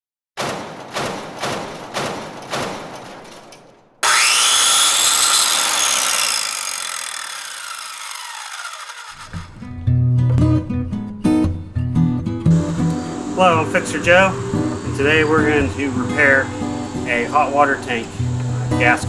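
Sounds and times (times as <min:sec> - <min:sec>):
hand saw cutting wood: 0:04.0 - 0:09.6, 0:12.5 - 0:19.0
power tool motor: 0:04.0 - 0:09.6, 0:12.5 - 0:19.0.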